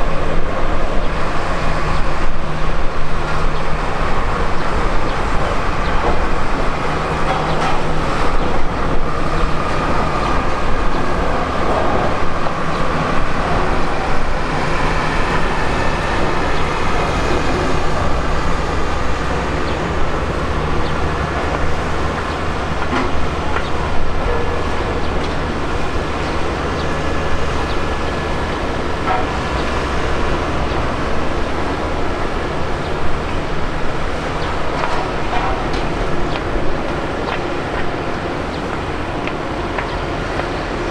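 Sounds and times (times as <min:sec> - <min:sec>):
jet engines roaring: 0:00.0 - 0:40.9.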